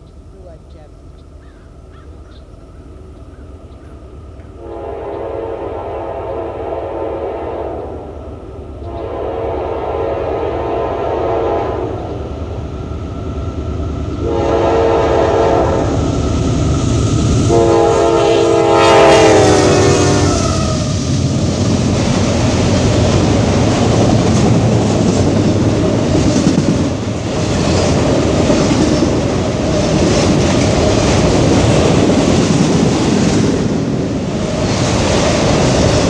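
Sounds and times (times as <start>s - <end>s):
approaching train rumble: 0.0s - 36.0s
locomotive air horn blasts: 4.6s - 8.1s, 8.9s - 12.1s, 14.2s - 16.0s, 17.5s - 20.9s.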